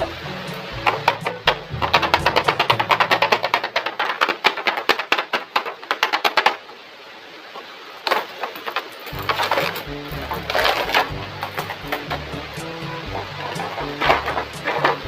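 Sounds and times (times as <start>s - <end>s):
background music: 0.0s - 3.5s, 9.1s - 15.0s
rapid sharp clicks: 0.0s - 6.7s.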